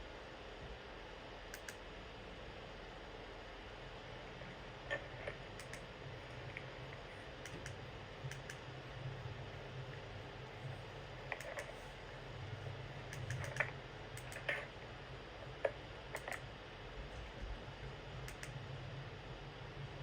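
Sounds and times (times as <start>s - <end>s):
low steady hum: 0.0s - 20.0s
light clicks and taps: 4.9s - 8.7s, 11.2s - 11.9s, 13.1s - 14.7s, 18.2s - 18.6s.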